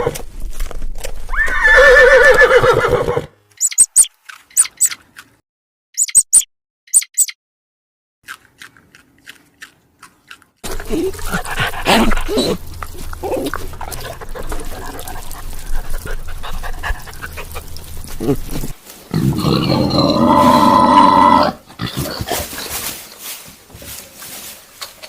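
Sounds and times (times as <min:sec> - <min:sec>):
sharp clicks: 0:03.6 - 0:05.0, 0:06.0 - 0:07.4.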